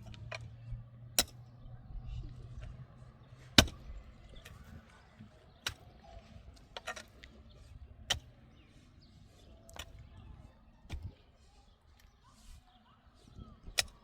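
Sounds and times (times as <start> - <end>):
low rumble: 0.0 - 5.3.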